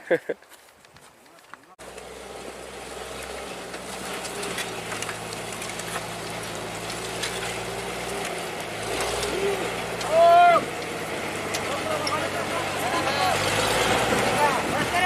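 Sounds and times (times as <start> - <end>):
truck engine running: 1.8 - 15.0
light rattles and clicks: 3.2 - 13.0.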